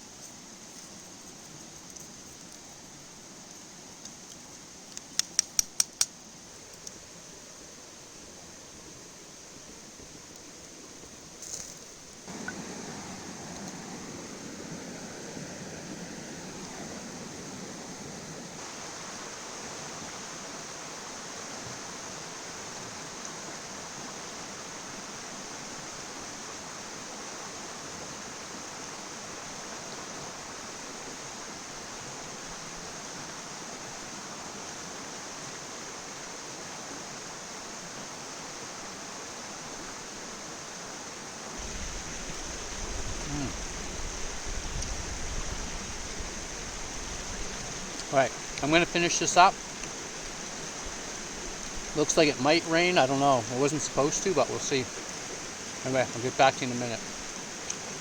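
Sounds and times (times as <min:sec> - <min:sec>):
river water rushing: 0:06.1 - 0:58.0.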